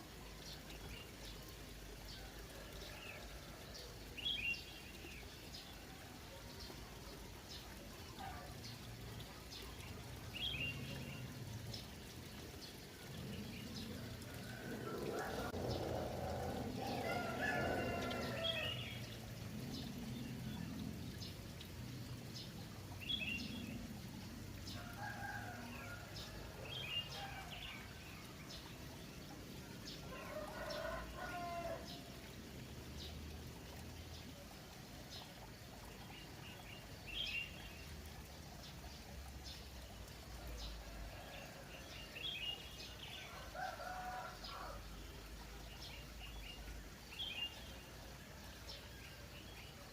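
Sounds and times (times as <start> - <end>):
trickling water: 0.0 - 49.9
roosters crowing: 14.6 - 18.9, 30.2 - 31.9.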